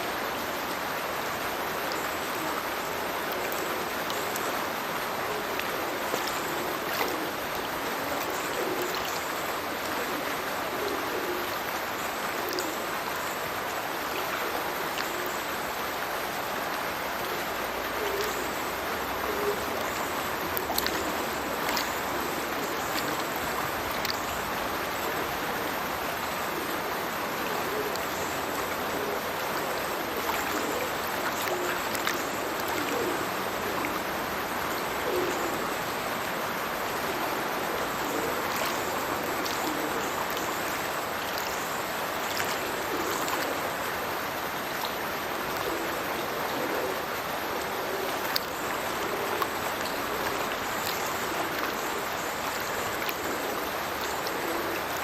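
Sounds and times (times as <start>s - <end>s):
rush of falling water: 0.0s - 55.0s
water gurgling: 0.0s - 55.0s
water splashing: 1.6s - 11.4s, 17.4s - 45.9s.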